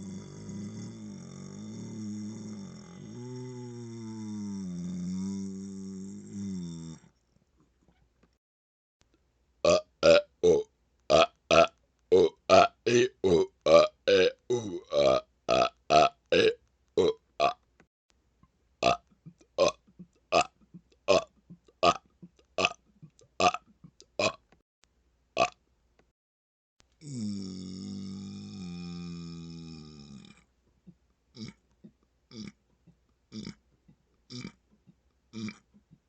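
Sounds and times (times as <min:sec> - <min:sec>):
man burping: 0:00.0 - 0:07.1, 0:09.7 - 0:17.6, 0:18.8 - 0:22.8, 0:24.2 - 0:24.4, 0:27.0 - 0:30.5, 0:31.3 - 0:31.6, 0:32.3 - 0:32.6, 0:33.3 - 0:33.6, 0:34.3 - 0:34.6, 0:35.3 - 0:35.7.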